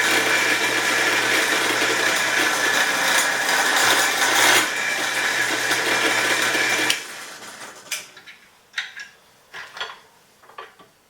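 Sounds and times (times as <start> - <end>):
drill press cutting steel: 0.0 - 8.0.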